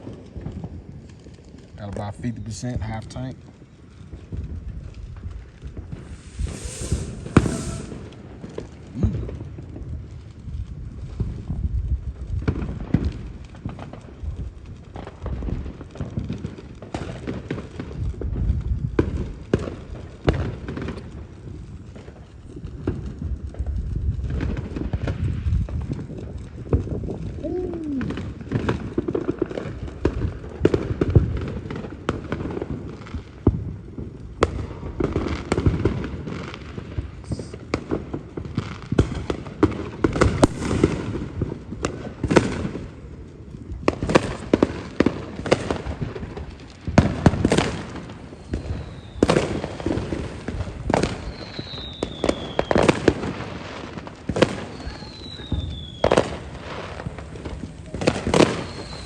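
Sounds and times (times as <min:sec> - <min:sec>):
fireworks bangs and crackling: 0:00.0 - 0:59.0
falling firework whistles: 0:05.8 - 0:09.7, 0:27.0 - 0:28.8, 0:40.1 - 0:41.3, 0:47.4 - 0:59.0.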